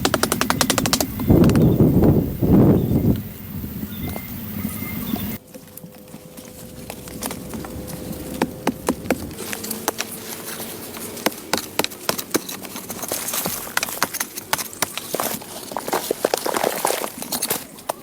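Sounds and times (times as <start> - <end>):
sharp knocks and clicks: 0.0 - 1.7
faint steady hum: 0.0 - 18.0.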